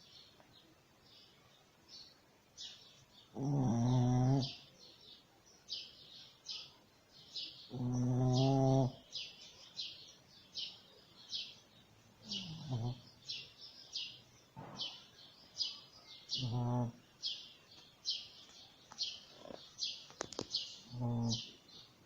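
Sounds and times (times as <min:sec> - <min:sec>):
bird chirping: 0:00.0 - 0:22.0
dog snoring: 0:03.3 - 0:04.6, 0:07.7 - 0:09.0, 0:12.2 - 0:13.0, 0:16.4 - 0:17.0, 0:20.9 - 0:21.4.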